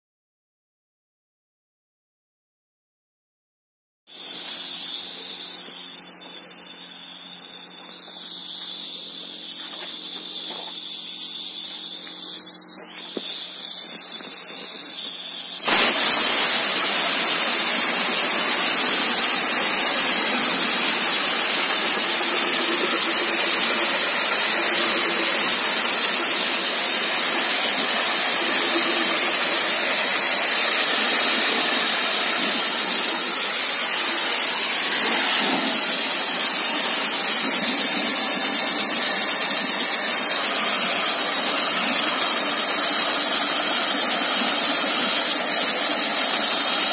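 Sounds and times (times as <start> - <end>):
sandblasting gun hissing: 4.1 - 46.9
steady mechanical hum: 4.1 - 46.9.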